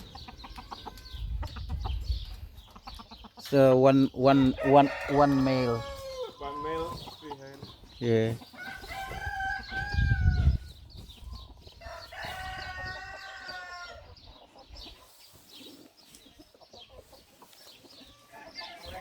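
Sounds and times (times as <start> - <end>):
roosters crowing: 0.0 - 1.6, 3.8 - 7.4, 8.2 - 14.3, 17.9 - 19.0
hens clucking: 0.0 - 19.0.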